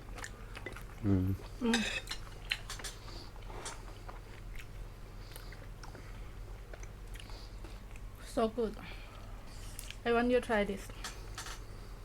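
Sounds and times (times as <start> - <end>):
person chewing food: 0.0 - 8.2
steady low hum: 0.0 - 12.0.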